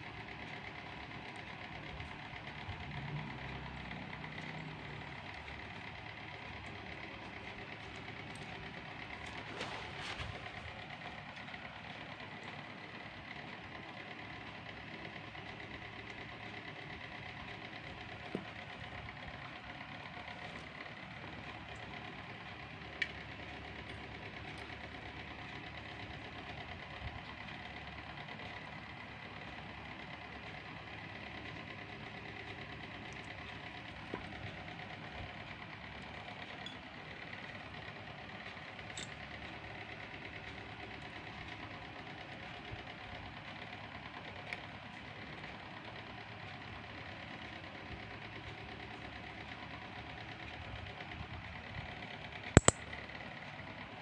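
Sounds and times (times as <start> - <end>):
steady mechanical hum: 0.0 - 54.0
faint short clicks: 52.6 - 52.8.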